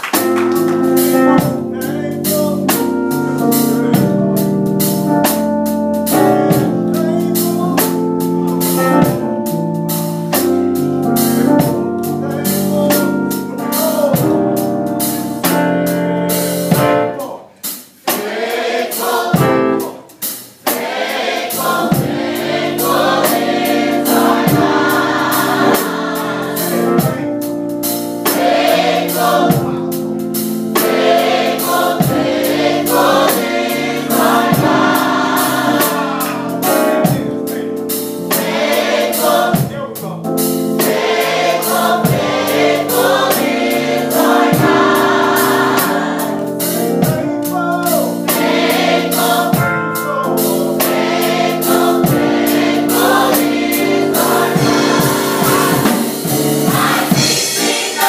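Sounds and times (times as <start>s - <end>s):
gospel choir singing: 0.0s - 58.0s
sharp beats: 16.7s - 58.0s.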